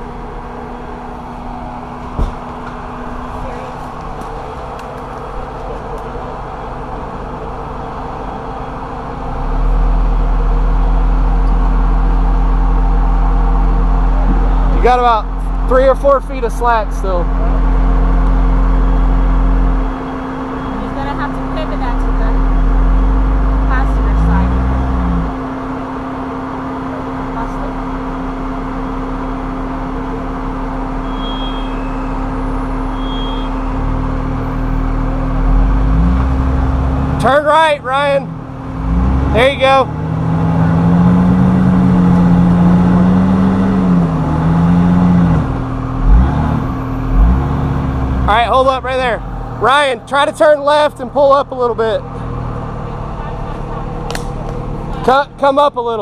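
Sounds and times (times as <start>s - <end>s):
off-road engine running: 0.0s - 56.0s
high chirps: 31.0s - 33.9s.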